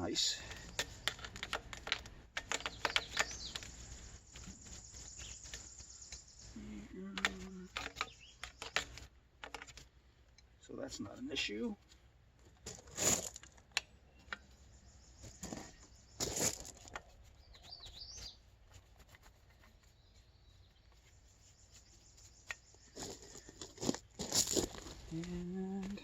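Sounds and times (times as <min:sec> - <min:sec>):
faint high bird chirps: 0:02.6 - 0:08.8, 0:17.2 - 0:23.6.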